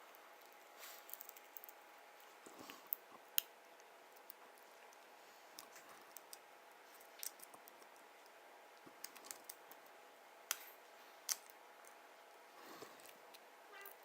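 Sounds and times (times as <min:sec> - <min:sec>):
faint steady hiss: 0:00.0 - 0:14.0.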